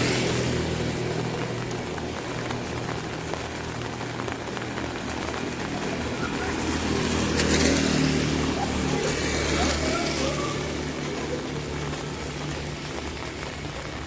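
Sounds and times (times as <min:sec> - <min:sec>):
rain hissing: 0:00.0 - 0:14.0
raindrops ticking on umbrella: 0:00.0 - 0:14.0
vehicle engine humming: 0:00.0 - 0:14.0.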